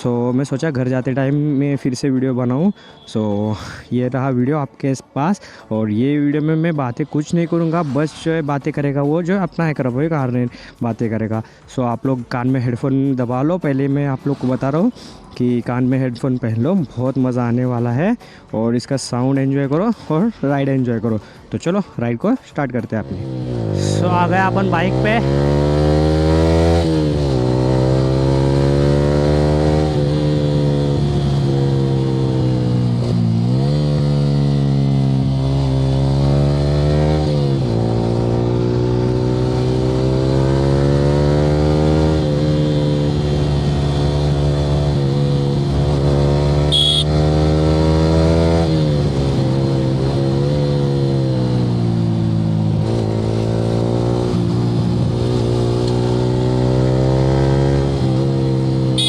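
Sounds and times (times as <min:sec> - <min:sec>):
motorcycle engine revving: 0:23.1 - 0:59.0.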